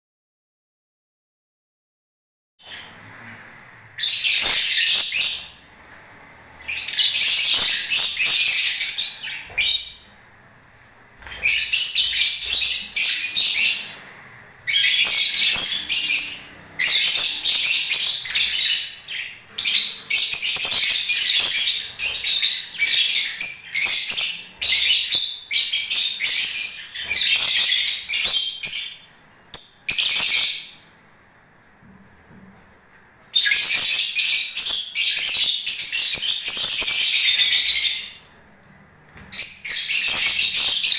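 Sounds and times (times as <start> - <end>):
lovebirds chattering: 6.6 - 10.4, 11.2 - 30.8, 33.3 - 38.3, 39.3 - 40.9.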